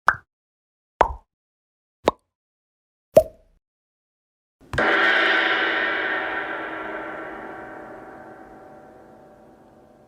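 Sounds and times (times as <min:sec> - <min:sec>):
gong-like metal ringing: 0:04.8 - 0:10.0.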